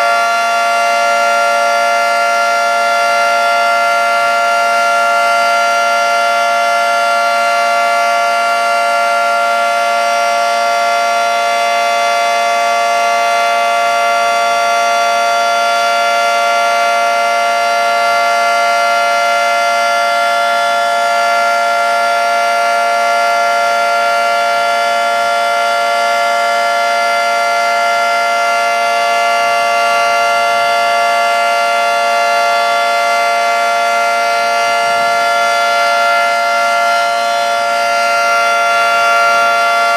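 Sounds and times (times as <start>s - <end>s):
two-tone warning siren: 0.0s - 39.9s.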